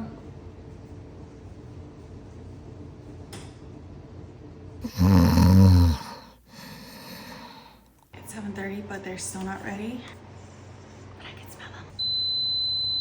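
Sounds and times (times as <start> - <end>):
loud snore: 4.8 - 7.8.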